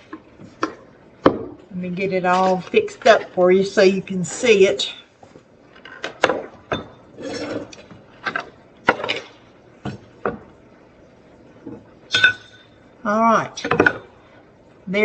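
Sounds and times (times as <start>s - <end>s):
dishes clinking and knocking: 0.0s - 1.7s, 5.8s - 10.5s, 11.6s - 12.8s, 13.6s - 14.2s.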